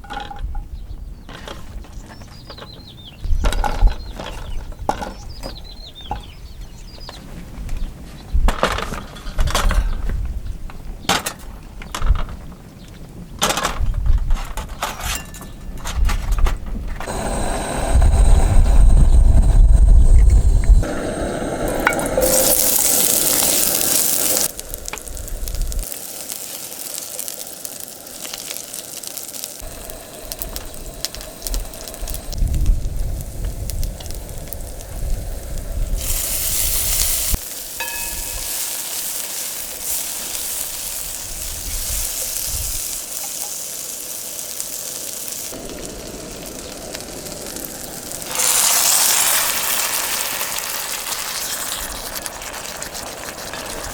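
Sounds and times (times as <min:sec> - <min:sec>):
sizzling hiss: 0:17.0 - 0:53.9
low rumble: 0:17.1 - 0:22.2.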